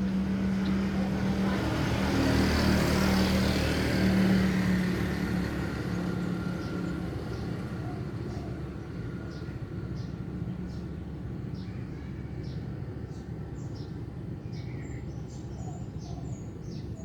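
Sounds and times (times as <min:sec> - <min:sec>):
motor vehicle passing: 0:00.0 - 0:06.5.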